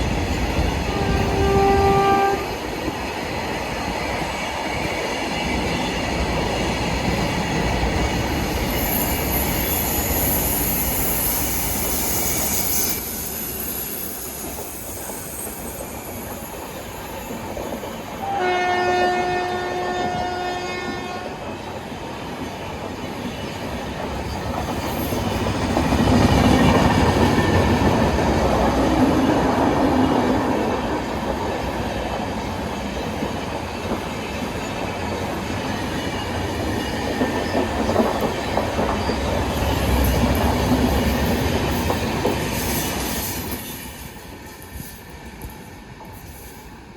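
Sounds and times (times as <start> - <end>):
train running on rails: 0.0 - 46.9
train horn: 0.8 - 2.6, 18.2 - 21.5.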